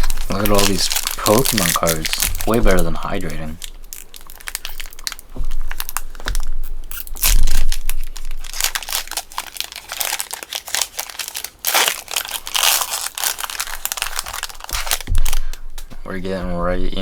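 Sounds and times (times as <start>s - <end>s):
foil wrapper crinkling and tearing: 0.0s - 15.9s
dull thump: 5.3s - 6.6s, 14.7s - 16.7s.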